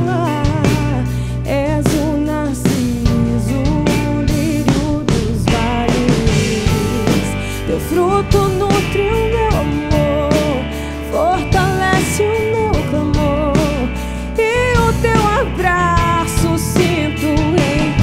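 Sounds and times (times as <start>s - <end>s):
pop-rock band playing: 0.0s - 18.0s.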